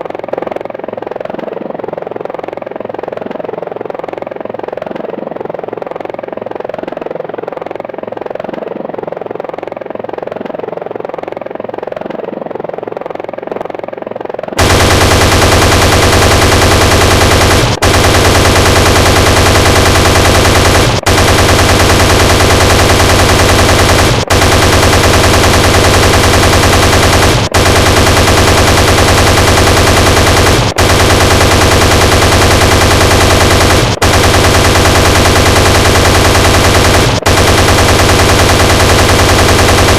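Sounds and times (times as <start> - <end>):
helicopter rotor and engine: 0.0 - 39.9
rapid gunfire: 13.0 - 39.9.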